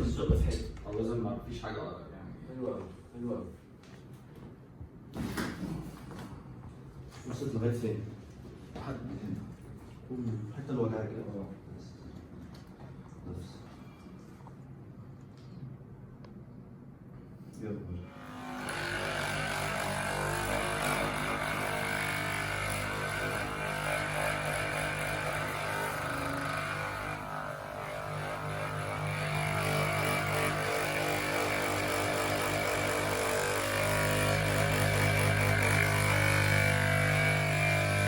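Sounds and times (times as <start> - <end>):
steady motor hum: 18.0 - 38.0.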